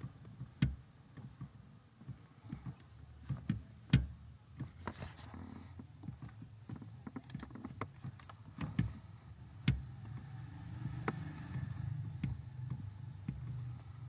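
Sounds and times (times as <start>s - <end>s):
steering clicks and knocks: 0.0s - 14.0s
low engine hum: 8.2s - 14.0s.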